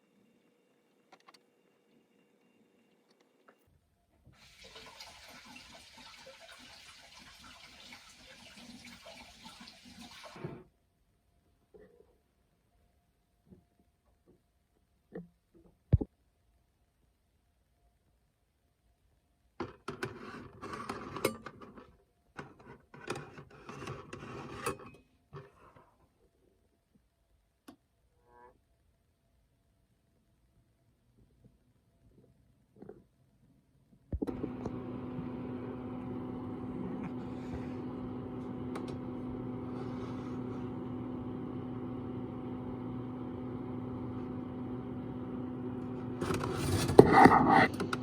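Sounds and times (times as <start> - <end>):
appliance electric hum: 34.1 - 48.0
rubbing and scraping in kitchen: 39.5 - 40.8, 46.0 - 48.0.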